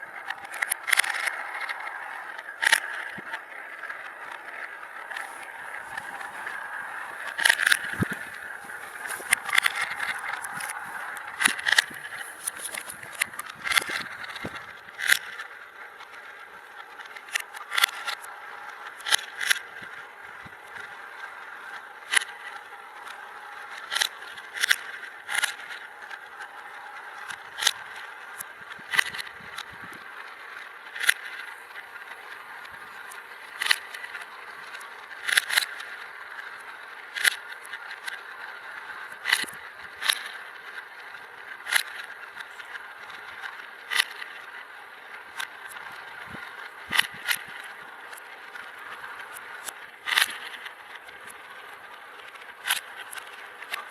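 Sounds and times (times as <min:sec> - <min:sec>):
marbles rolling whir: 0:00.2 - 0:53.9
marbles clicking on track: 0:05.0 - 0:15.5, 0:21.7 - 0:53.9.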